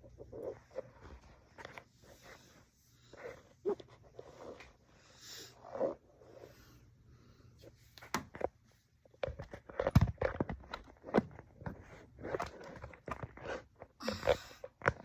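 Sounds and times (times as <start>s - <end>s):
small objects knocking and rustling: 9.1s - 15.0s.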